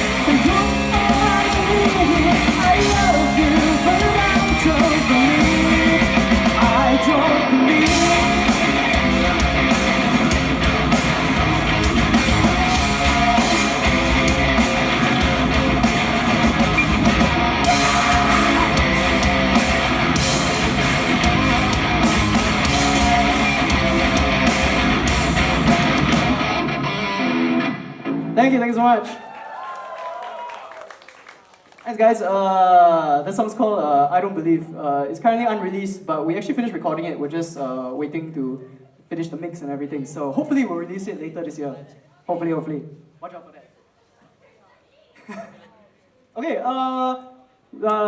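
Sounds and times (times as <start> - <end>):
live rock band playing: 0.0 - 28.4.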